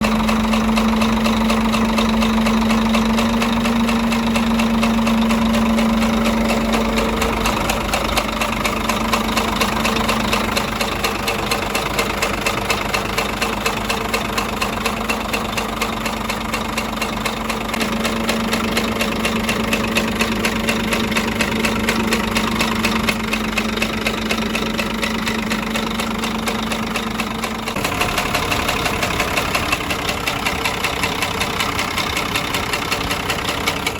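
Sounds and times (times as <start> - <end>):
diesel engine idling with knock: 0.0 - 33.9.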